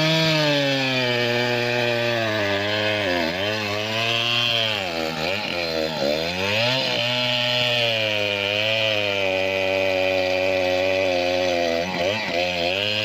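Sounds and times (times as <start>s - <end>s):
chainsaw cutting wood: 0.0s - 13.0s.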